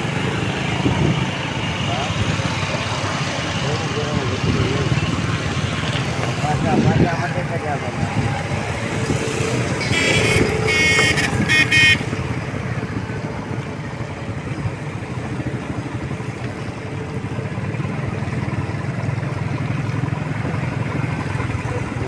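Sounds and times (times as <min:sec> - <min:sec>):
traffic engines running: 0:00.0 - 0:22.0
high-pitched vehicle horn honks: 0:09.8 - 0:12.1.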